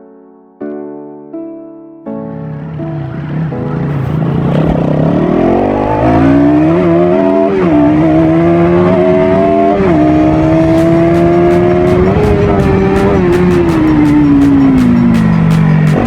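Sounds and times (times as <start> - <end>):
motorcycle engine revving: 2.6 - 16.0.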